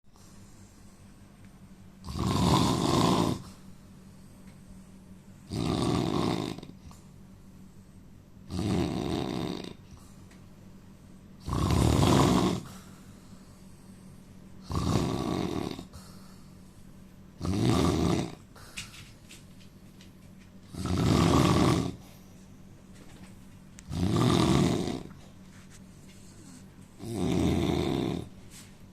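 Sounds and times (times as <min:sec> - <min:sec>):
quiet breathing: 0:00.1 - 0:01.5, 0:03.4 - 0:05.5, 0:06.7 - 0:08.4, 0:12.6 - 0:14.6, 0:15.8 - 0:17.2, 0:24.9 - 0:27.0
man snoring: 0:02.0 - 0:03.5, 0:05.5 - 0:06.8, 0:08.5 - 0:09.8, 0:11.4 - 0:12.7, 0:14.6 - 0:15.9, 0:17.4 - 0:18.4, 0:20.8 - 0:22.0, 0:23.9 - 0:25.1, 0:27.0 - 0:28.3.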